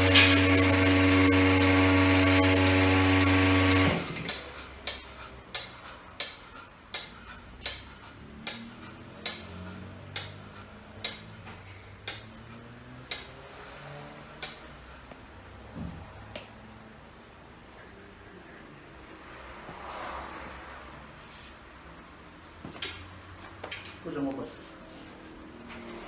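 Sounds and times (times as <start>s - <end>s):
milking machine pulsator ticking: 0.0s - 11.3s.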